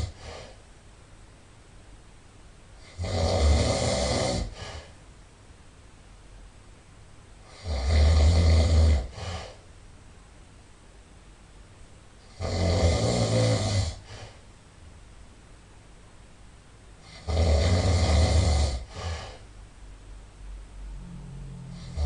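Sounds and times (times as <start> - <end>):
person snoring loudly: 2.8 - 4.6, 7.5 - 9.2, 12.3 - 14.0, 17.1 - 18.9, 20.9 - 22.0.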